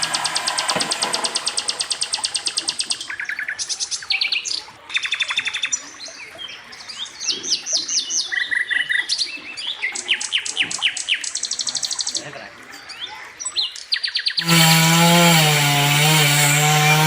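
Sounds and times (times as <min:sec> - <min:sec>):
songbird singing trills and whistles: 0:01.4 - 0:14.4.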